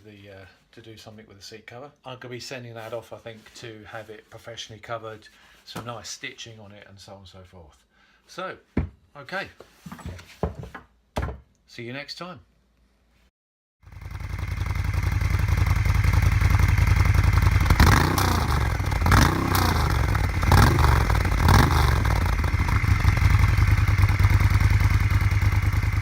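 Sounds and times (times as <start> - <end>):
motorcycle engine idling and revving: 13.8 - 26.0.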